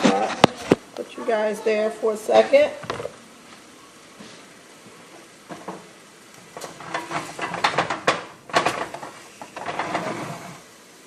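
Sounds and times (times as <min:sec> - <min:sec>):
kitchen knocks and rattles: 0:05.5 - 0:05.9, 0:06.5 - 0:10.4.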